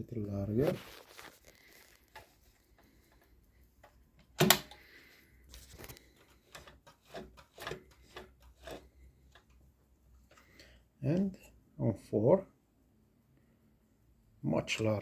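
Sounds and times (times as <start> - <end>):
sewing machine clunk: 4.2 - 4.9.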